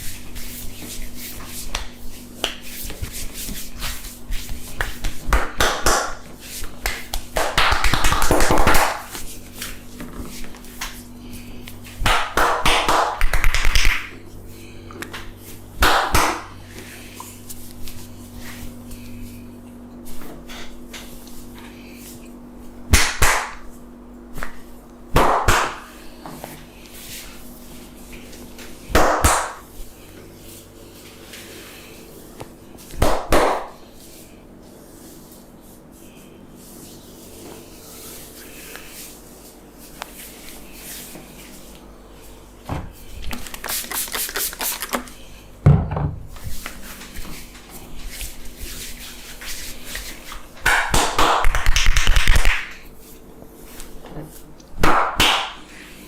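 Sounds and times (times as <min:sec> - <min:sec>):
hands smacking skin: 0:03.9 - 0:09.2
fast rhythmic tapping: 0:06.8 - 0:09.1.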